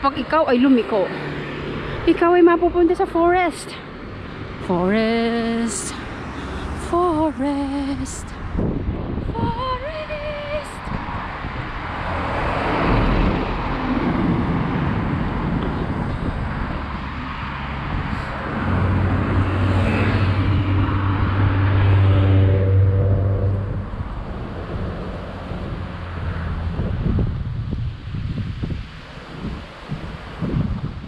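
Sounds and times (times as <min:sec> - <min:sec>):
vehicle engine humming: 0:00.0 - 0:29.4
wind noise on microphone: 0:04.1 - 0:31.0.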